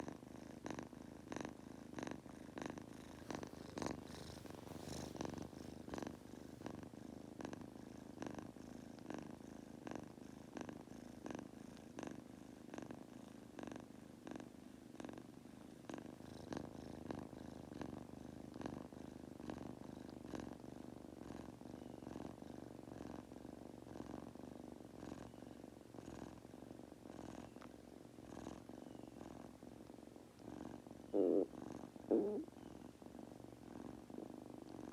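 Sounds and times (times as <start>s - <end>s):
kitten purring: 0.0s - 34.9s.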